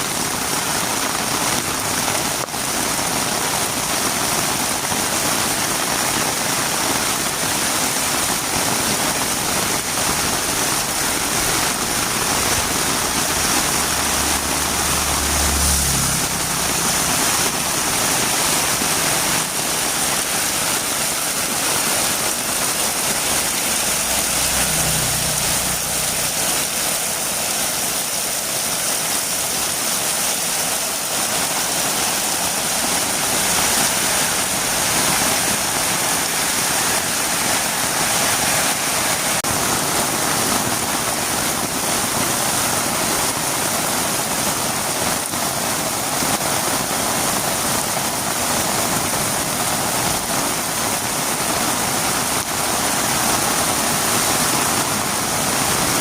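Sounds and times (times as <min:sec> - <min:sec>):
heavy rain: 0:00.0 - 0:56.0
low rumble: 0:12.4 - 0:18.0.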